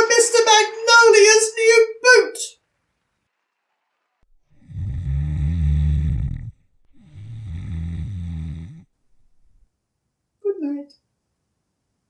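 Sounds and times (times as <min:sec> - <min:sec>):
cartoon snoring: 0:04.6 - 0:08.9.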